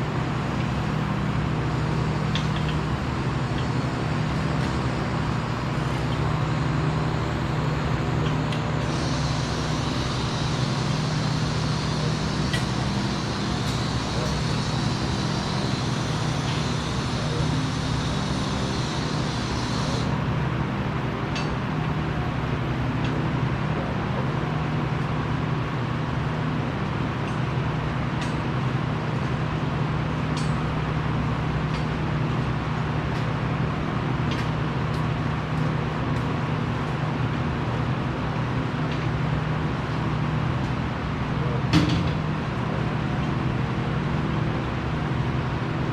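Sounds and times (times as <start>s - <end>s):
shop machinery hum: 0.0s - 45.9s
high hiss: 8.8s - 20.2s.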